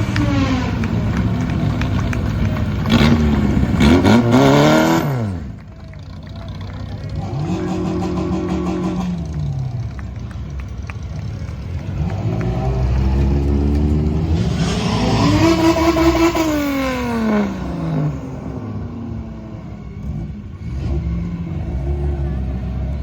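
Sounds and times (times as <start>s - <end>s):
race car engine passing: 0.0s - 23.0s.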